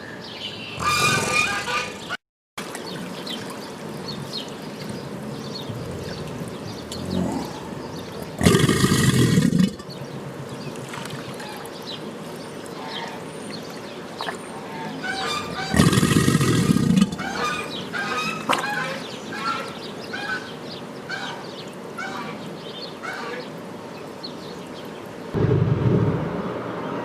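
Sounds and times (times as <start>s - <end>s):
crocodile growling: 0.8s - 1.7s, 5.6s - 9.9s, 15.4s - 17.5s
water trickling: 0.8s - 10.0s.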